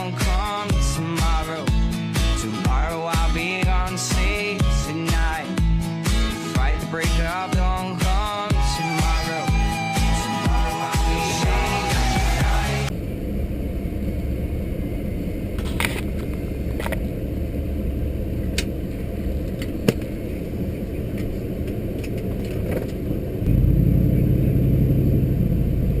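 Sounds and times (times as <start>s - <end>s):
car driving rumble from inside: 12.8s - 26.0s.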